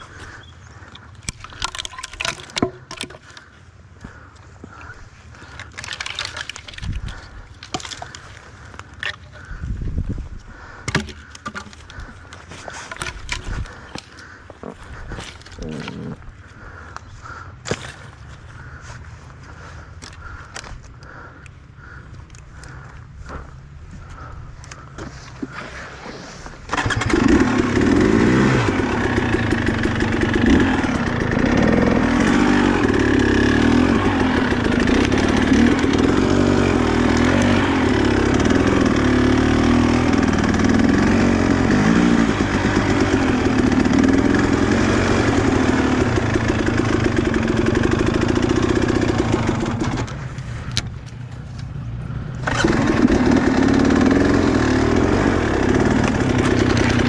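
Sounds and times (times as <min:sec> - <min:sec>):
small two-stroke engine revving: 0:00.0 - 0:03.5, 0:26.4 - 0:50.8, 0:52.1 - 0:57.0.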